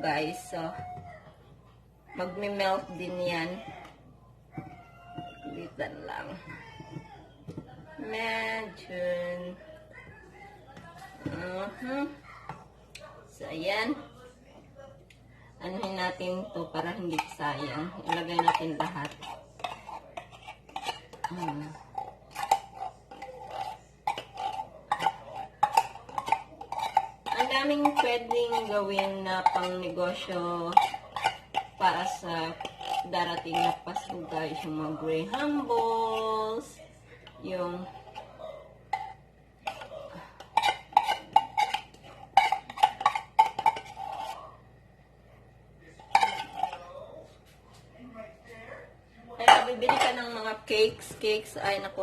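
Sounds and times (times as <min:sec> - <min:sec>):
metal spoon scraping cookware: 0:15.7 - 0:36.7, 0:37.7 - 0:44.5, 0:46.0 - 0:47.0, 0:49.4 - 0:50.8.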